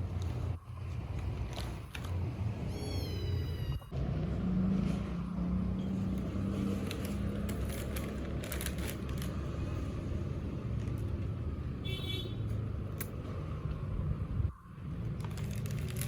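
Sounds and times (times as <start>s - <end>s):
road traffic rumble: 0.0s - 16.0s.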